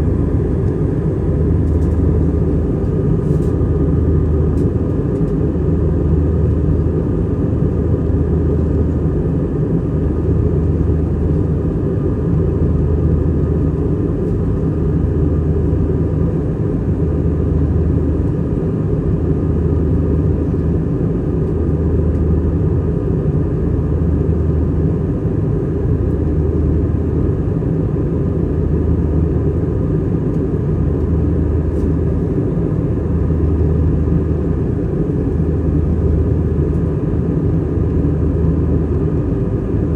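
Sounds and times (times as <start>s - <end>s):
pulsing low hum: 0.0s - 4.7s
airplane cabin engine drone: 0.0s - 39.9s.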